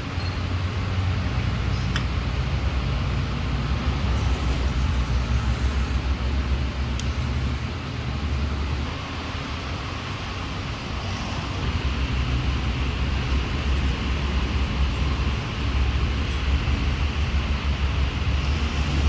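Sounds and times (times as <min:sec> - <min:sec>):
vehicle engine rumbling: 0:00.0 - 0:19.0.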